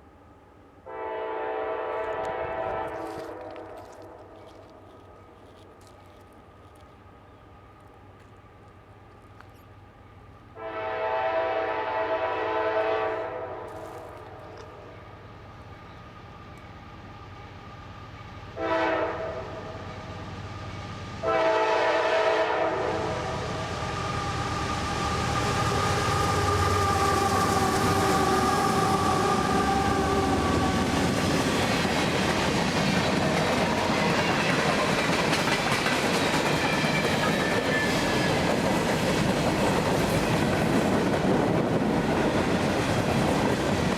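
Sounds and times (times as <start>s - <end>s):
train rumbling past: 0.0s - 43.9s
locomotive air horn blasts: 0.8s - 4.4s, 10.6s - 14.5s, 18.6s - 19.8s, 21.2s - 23.7s
clickety-clack of train wheels: 25.4s - 43.9s.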